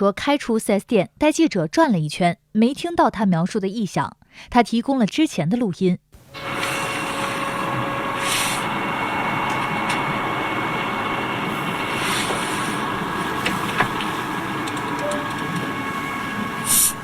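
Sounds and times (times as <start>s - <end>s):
car droning hum: 6.3s - 17.0s.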